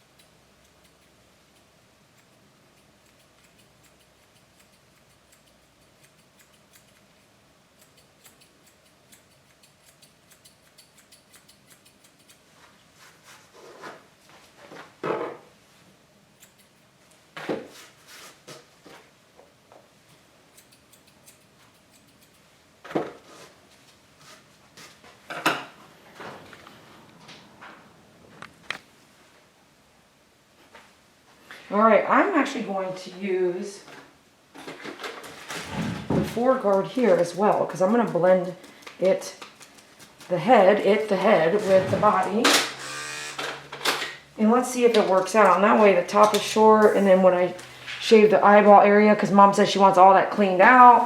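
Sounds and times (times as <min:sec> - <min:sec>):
grooming shears snipping: 0:00.0 - 0:13.2, 0:16.4 - 0:16.9, 0:20.0 - 0:23.2, 0:36.6 - 0:40.2, 0:44.9 - 0:48.1.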